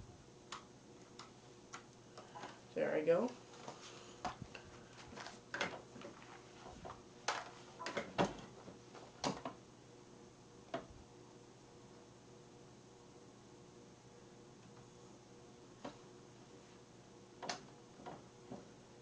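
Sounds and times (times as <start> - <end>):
faint steady background noise: 0.0 - 19.0.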